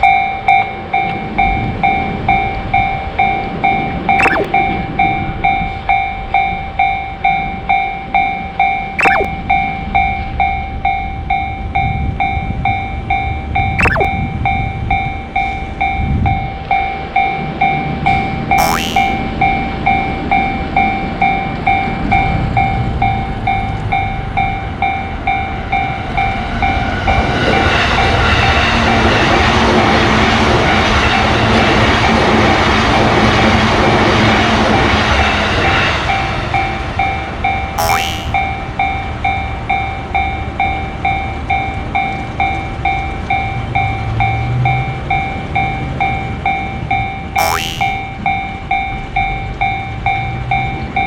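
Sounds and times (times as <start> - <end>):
railroad crossing bell ringing: 0.0 - 8.9, 9.5 - 13.8, 38.4 - 47.3, 48.1 - 51.0
train approaching: 20.7 - 37.7.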